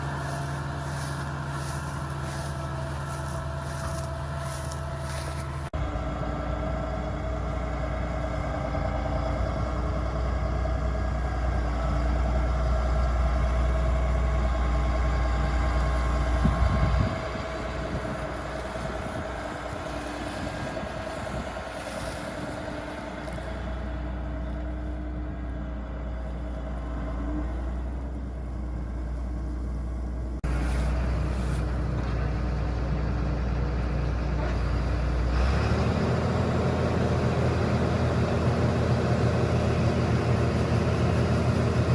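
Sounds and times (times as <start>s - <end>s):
heavy machinery engine rumble: 0.0s - 41.9s.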